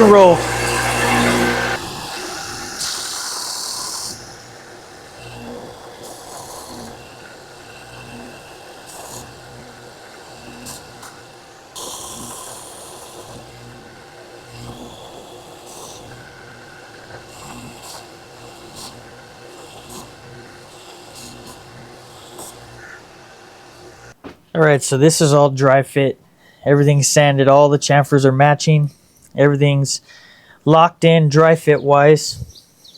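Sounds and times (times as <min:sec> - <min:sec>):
belt sander running: 0:00.0 - 0:24.6
wood pressed to sanding belt: 0:00.0 - 0:25.4.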